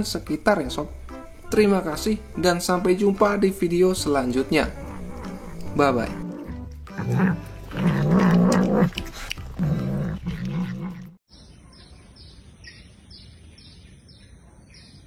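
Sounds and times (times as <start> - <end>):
low wavering animal vocalization: 4.4 - 11.2.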